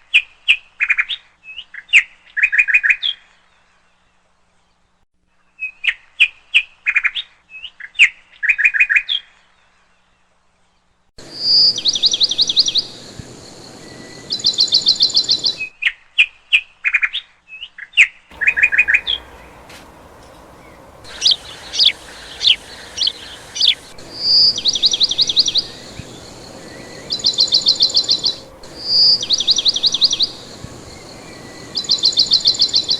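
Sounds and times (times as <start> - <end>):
songbirds chirping and trilling: 11.2 - 15.7, 18.3 - 32.9
steady hiss: 11.2 - 15.7, 18.3 - 32.9.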